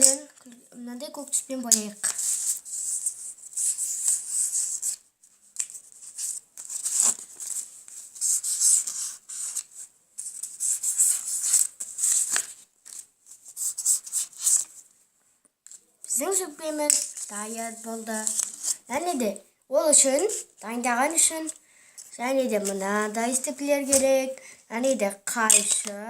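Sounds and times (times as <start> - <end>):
marker scratching on paper: 5.9 - 9.7, 13.5 - 14.7, 19.8 - 21.5, 22.2 - 24.3.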